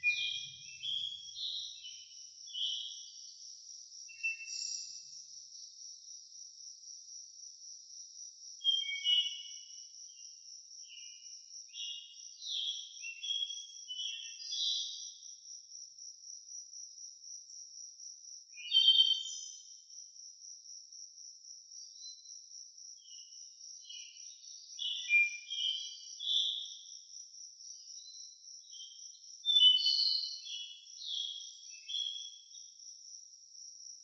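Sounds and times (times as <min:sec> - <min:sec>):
birds singing: 0:00.0 - 0:06.2, 0:08.6 - 0:15.4, 0:18.5 - 0:19.8, 0:23.0 - 0:32.9
crickets chirping: 0:00.0 - 0:34.0.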